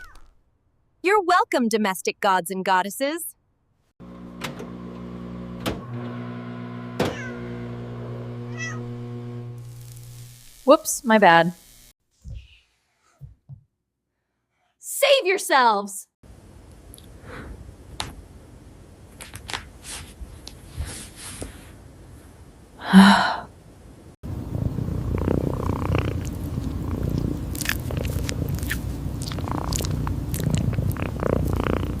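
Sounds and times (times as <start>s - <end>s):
cat purring: 24.6s - 32.0s.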